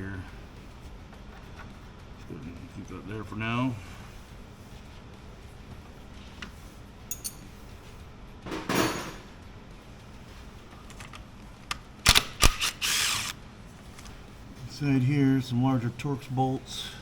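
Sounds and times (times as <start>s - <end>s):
hand tools clinking on metal: 7.1s - 7.5s.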